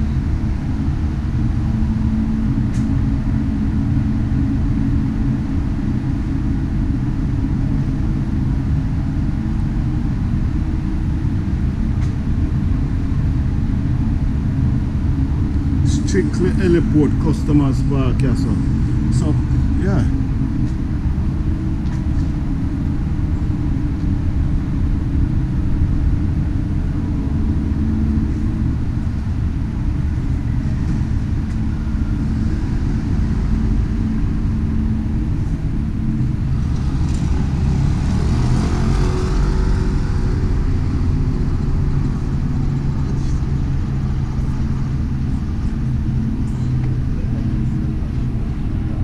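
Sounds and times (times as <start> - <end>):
road traffic rumble: 0.0 - 49.0
vehicle passing: 36.3 - 45.1.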